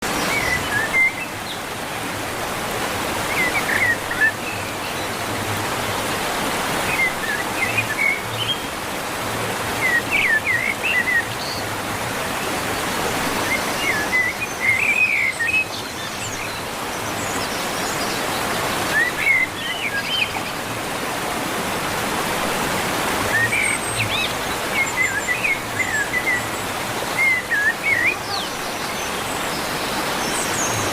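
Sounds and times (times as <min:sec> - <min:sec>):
birds chirping: 0:09.7 - 0:21.6, 0:22.8 - 0:30.9.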